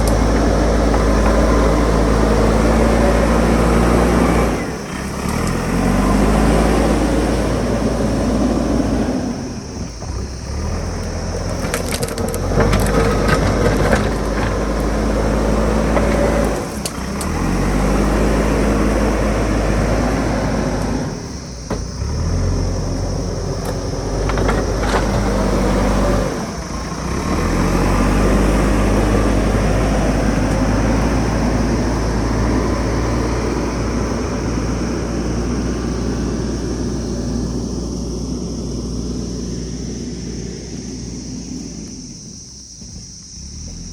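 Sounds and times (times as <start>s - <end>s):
soil and rock crunching: 0.0s - 8.8s, 9.7s - 21.0s, 21.6s - 34.1s
backhoe diesel engine under load: 0.0s - 43.9s.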